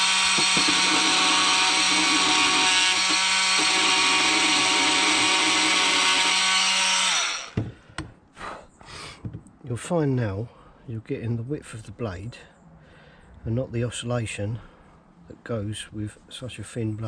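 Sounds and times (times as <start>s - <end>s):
oscillating multi-tool cutting plasterboard: 0.0s - 7.6s
tool hum winding down: 0.0s - 7.6s.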